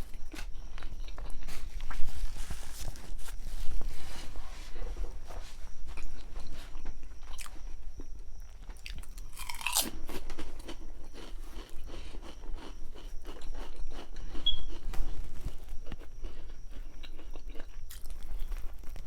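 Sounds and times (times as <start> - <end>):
chewing and biting sandwich: 6.0 - 19.0.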